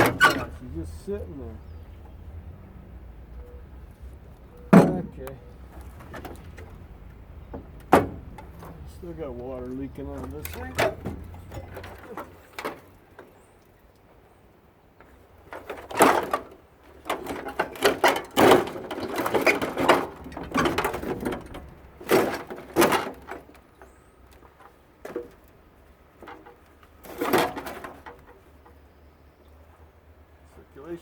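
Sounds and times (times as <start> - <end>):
metal parts knocking and clanking: 0.0 - 0.6, 4.6 - 6.8, 10.1 - 12.8, 15.5 - 23.5.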